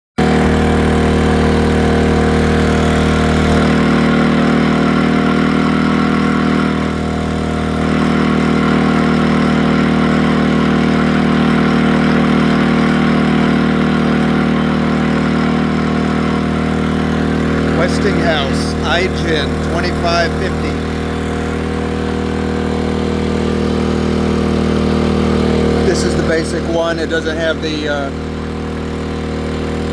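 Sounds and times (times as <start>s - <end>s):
generator running: 0.2s - 29.9s.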